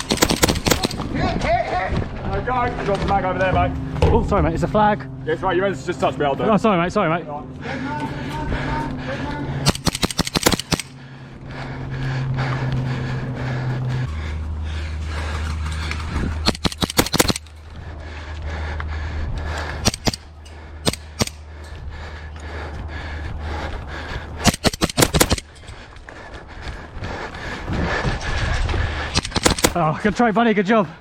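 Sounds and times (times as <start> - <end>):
airsoft guns firing: 0.0 - 1.2, 9.7 - 11.0, 16.4 - 17.6, 19.8 - 21.5, 24.4 - 25.6, 29.1 - 29.9.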